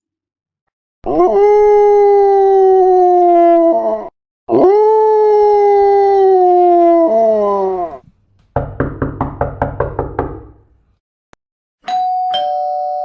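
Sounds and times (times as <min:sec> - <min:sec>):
two-note doorbell chime: 0:11.8 - 0:13.0.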